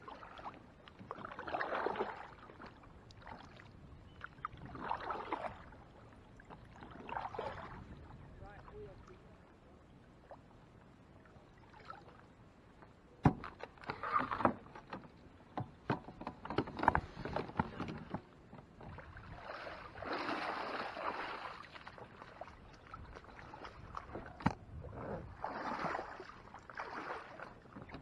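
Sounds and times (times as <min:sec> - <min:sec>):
water splashing: 0:00.0 - 0:03.7, 0:04.3 - 0:08.1, 0:18.8 - 0:28.0.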